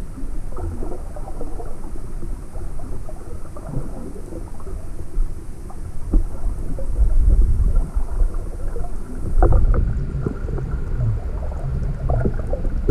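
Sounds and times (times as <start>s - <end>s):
crackles and clicks: 0.0s - 12.9s
underwater rumble: 0.0s - 12.9s.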